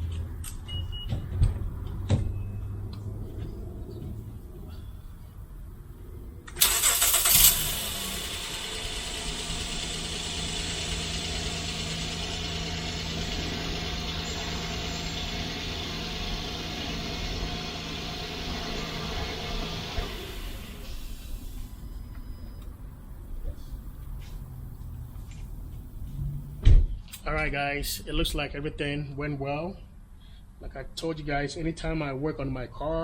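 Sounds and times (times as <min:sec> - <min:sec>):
engine cranking: 0:06.5 - 0:20.6
car engine idling: 0:06.6 - 0:26.0.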